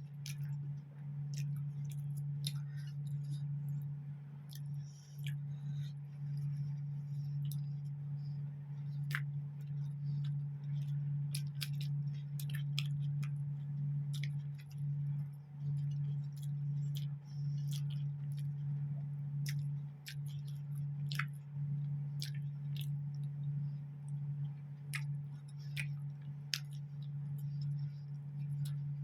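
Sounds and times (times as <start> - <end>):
steady low hum: 0.0 - 29.0
mouth chewing wet smacks: 1.3 - 3.8, 4.5 - 6.6, 8.8 - 13.4, 14.1 - 14.8, 19.4 - 21.4, 22.2 - 23.5, 24.1 - 28.8.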